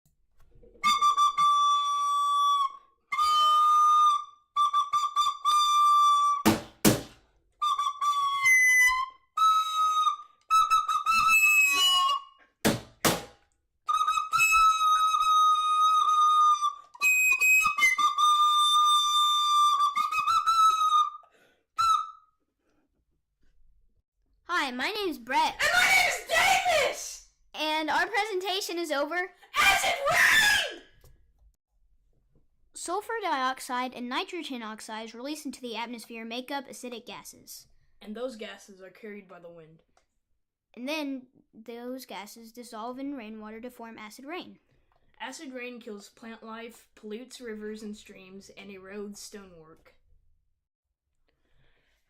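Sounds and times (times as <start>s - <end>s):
whistle-like wind instrument: 0.8s - 6.5s, 7.6s - 12.6s, 13.9s - 22.4s
sharp knocks: 6.4s - 7.2s, 12.6s - 13.4s.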